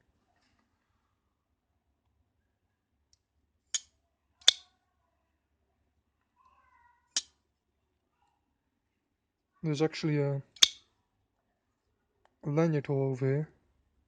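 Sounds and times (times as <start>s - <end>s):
knife blade clicking into place: 3.8s - 4.6s.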